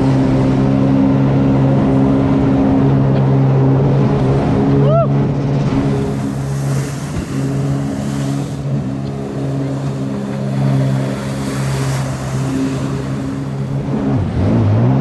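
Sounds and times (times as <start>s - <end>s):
watercraft engine running: 0.0s - 15.0s
water jet hissing and splashing: 5.6s - 14.1s.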